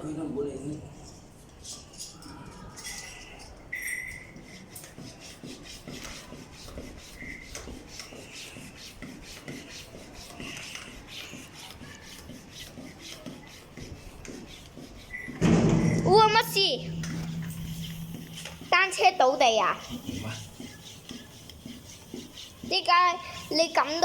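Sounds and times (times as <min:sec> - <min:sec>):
pump squeaks: 0:02.9 - 0:04.6, 0:07.0 - 0:07.6, 0:14.5 - 0:24.0
bicycle pump strokes: 0:02.9 - 0:24.0.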